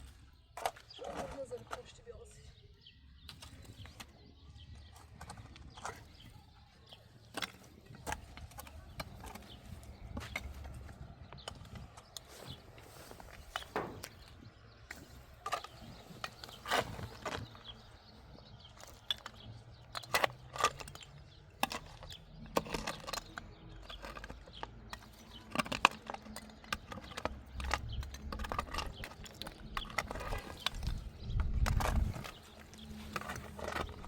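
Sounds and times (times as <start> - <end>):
irregular knocks and clicks: 13.5 - 14.5.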